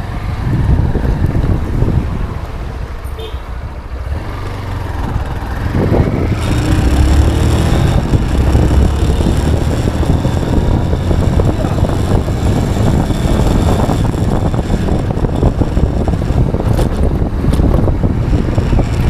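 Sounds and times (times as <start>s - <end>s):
motorcycle engine accelerating: 4.0s - 19.0s.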